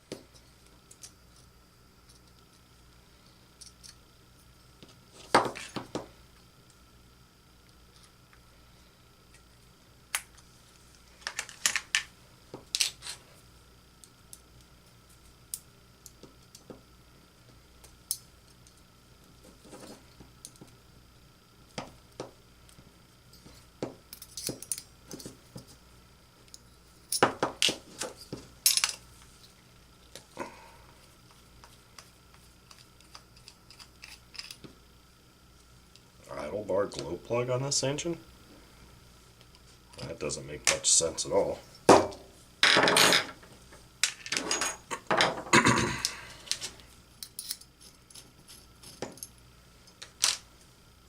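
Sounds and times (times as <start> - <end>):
metal tools clinking on workbench: 42.6 - 43.4, 44.0 - 45.4.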